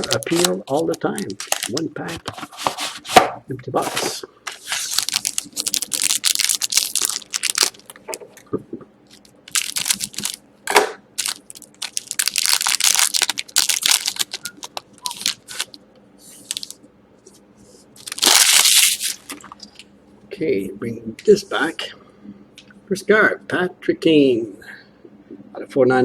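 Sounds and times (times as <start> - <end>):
wrapper crinkling and tearing: 0.0 - 3.1, 3.8 - 8.2, 9.1 - 10.4, 11.2 - 16.8, 18.0 - 19.8
cards rustling: 0.0 - 3.2, 3.8 - 8.2, 9.1 - 10.4, 11.2 - 16.8, 18.0 - 19.8.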